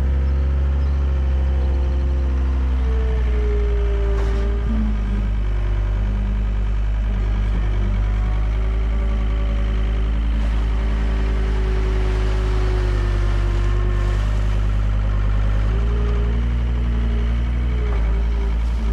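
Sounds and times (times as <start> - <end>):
excavator diesel engine running: 0.0 - 18.9
held mechanical whine: 17.7 - 18.9.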